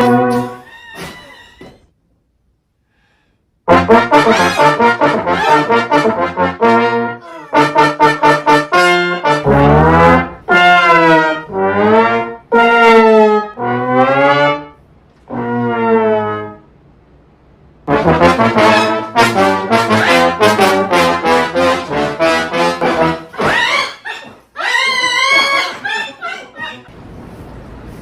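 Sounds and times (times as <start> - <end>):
brass-like musical tones: 0.0 - 0.7, 3.7 - 16.7, 17.8 - 23.5.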